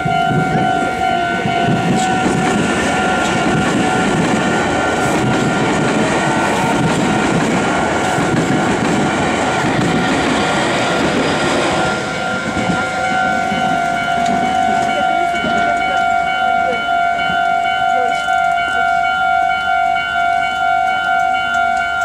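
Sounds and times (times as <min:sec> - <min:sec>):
crossing warning bell ringing: 0:00.0 - 0:22.0
train passing: 0:00.0 - 0:22.0.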